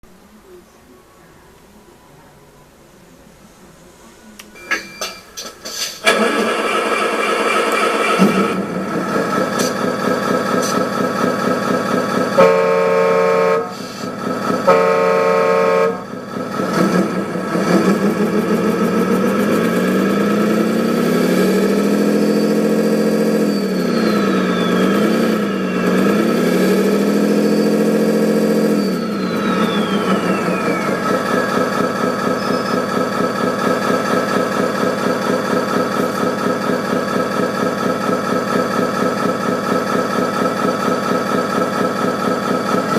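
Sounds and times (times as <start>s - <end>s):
electronic diesel engine sound: 4.5s - 42.9s
truck horn blasts: 12.2s - 16.3s
high whine sliding down: 17.0s - 33.3s.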